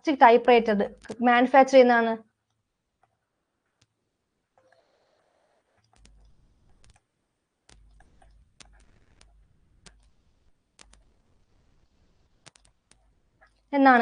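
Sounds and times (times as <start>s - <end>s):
faint clicks: 10.8s - 11.1s, 12.4s - 13.7s.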